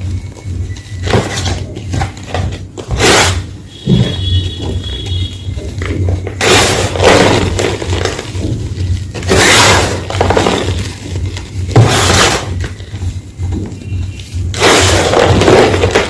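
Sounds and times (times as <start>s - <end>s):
chalk block crunching: 4.2s - 13.0s.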